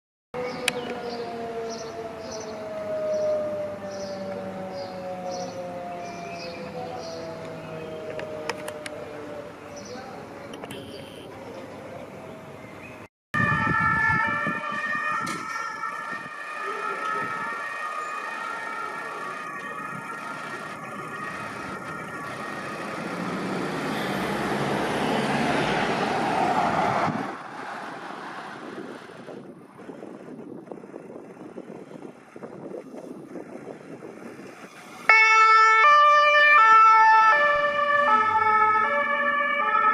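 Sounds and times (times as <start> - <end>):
fire engine sirens: 0.3 - 12.6, 13.4 - 30.4, 34.7 - 39.9.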